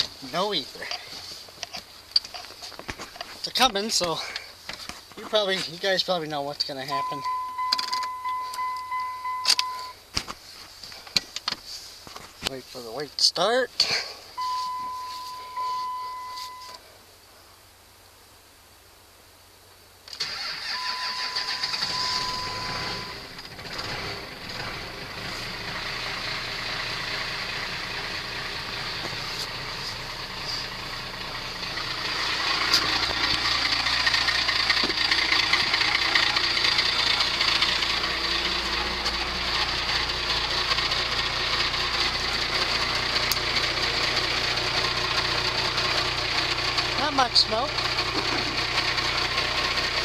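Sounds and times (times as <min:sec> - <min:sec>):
diesel engine starting and running: 0:05.3 - 0:10.0, 0:13.8 - 0:16.8, 0:20.1 - 0:50.0.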